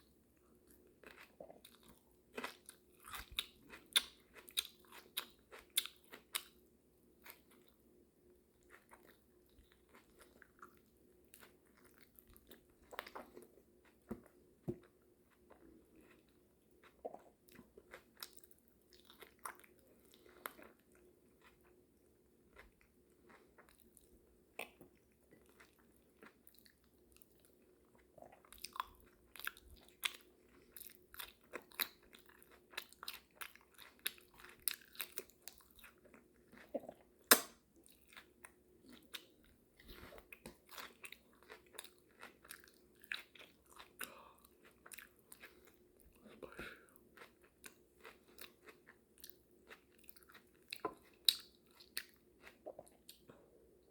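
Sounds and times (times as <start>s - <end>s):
open-mouth chewing: 0.7s - 6.6s, 22.5s - 53.4s.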